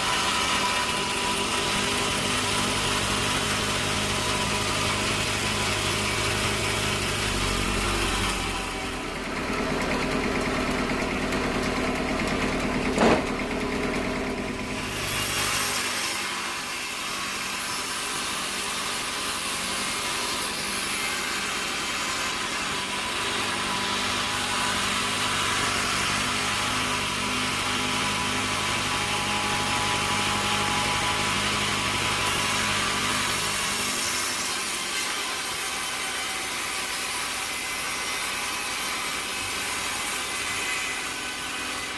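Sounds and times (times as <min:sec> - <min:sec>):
saw cutting through wood: 0:00.0 - 0:41.9
sawmill machinery running: 0:00.0 - 0:41.9
sharp knock: 0:12.9 - 0:13.4.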